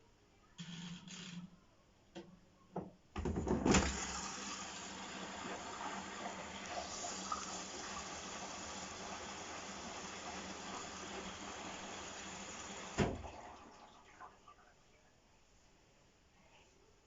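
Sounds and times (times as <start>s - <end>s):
water rushing into washing machine: 3.2s - 14.4s.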